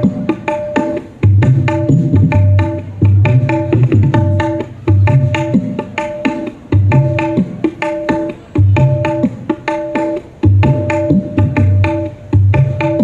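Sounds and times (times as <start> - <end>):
hand drum groove: 0.0 - 13.0.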